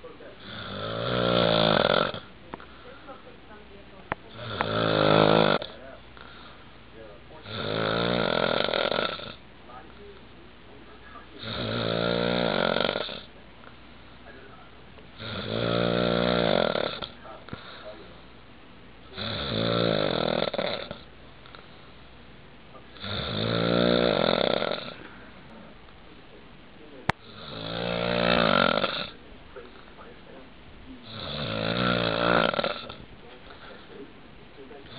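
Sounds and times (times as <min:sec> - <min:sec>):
man snoring: 0:00.4 - 0:02.3, 0:04.3 - 0:06.4, 0:07.4 - 0:09.4, 0:11.4 - 0:13.3, 0:15.2 - 0:17.8, 0:19.1 - 0:21.1, 0:23.0 - 0:25.0, 0:27.2 - 0:29.2, 0:31.0 - 0:33.0.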